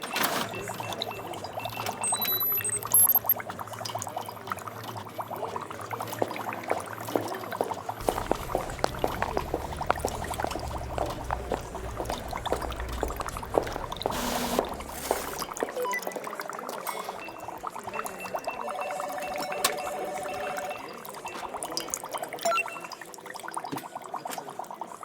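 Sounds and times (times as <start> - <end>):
liquid bubbling in glassware: 0.6 - 19.3, 20.6 - 25.0.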